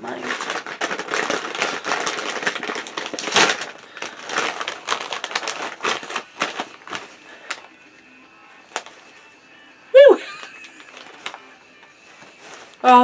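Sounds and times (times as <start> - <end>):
snack wrapper crinkling: 0.1 - 8.0, 10.4 - 12.8.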